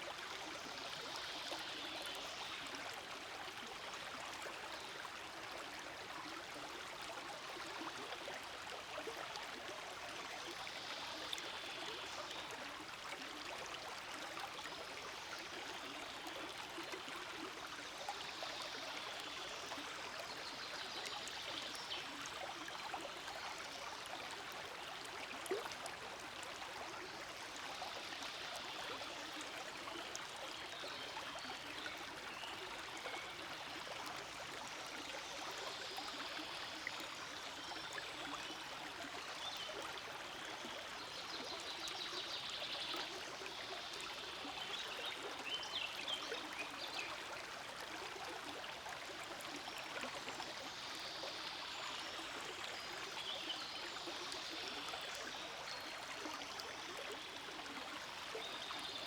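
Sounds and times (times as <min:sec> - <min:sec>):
stream flowing: 0:00.1 - 0:59.0.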